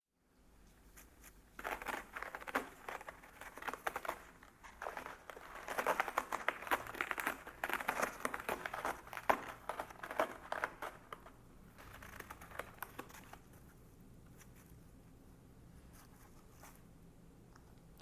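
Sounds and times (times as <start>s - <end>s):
cat clawing a scratching post: 1.0s - 13.6s.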